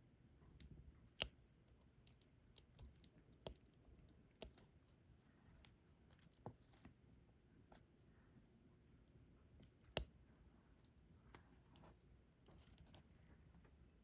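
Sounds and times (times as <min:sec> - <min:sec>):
small clicks and taps of pen: 0:00.5 - 0:04.8, 0:09.6 - 0:10.2, 0:10.8 - 0:13.1.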